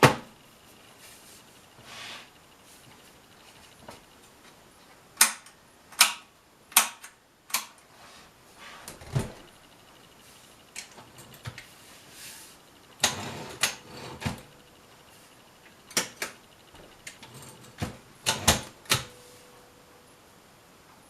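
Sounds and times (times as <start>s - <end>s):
manual typewriter clacking: 17.0s - 19.1s.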